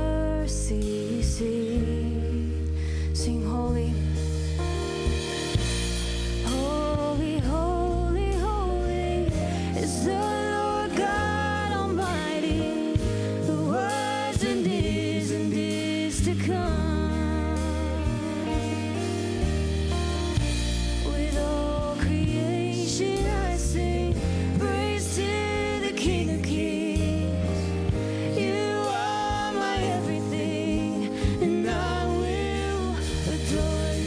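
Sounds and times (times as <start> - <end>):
sustained bass notes: 0.0 - 34.0
steady drum beat: 3.6 - 34.0
person singing: 6.5 - 19.6, 20.9 - 34.0.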